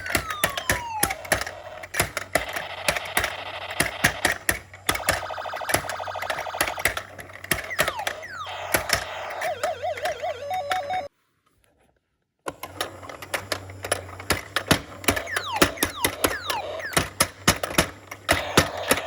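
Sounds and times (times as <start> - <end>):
toy hammer knocking: 0.0 - 2.5, 14.3 - 19.0
electronic toy beeps and buzzing: 0.0 - 4.3, 4.9 - 11.1, 15.0 - 17.3, 18.3 - 19.0
warbling electronic tone: 7.7 - 11.1, 15.2 - 17.0.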